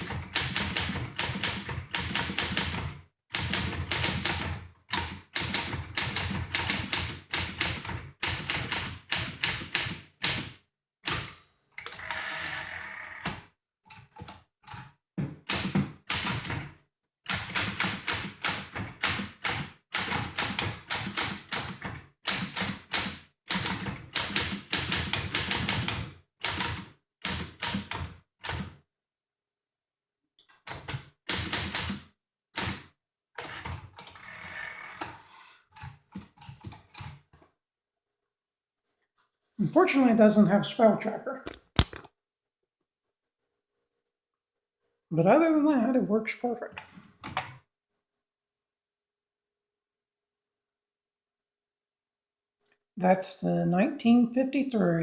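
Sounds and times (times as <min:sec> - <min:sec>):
typewriter typing: 0:00.0 - 0:10.5, 0:15.5 - 0:28.7, 0:30.6 - 0:32.0
typewriter bell ring: 0:11.1 - 0:12.2.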